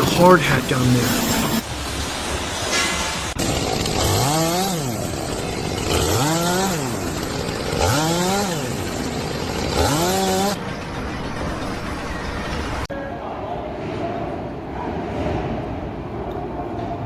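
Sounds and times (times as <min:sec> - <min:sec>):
small engine revving: 0:03.4 - 0:12.9.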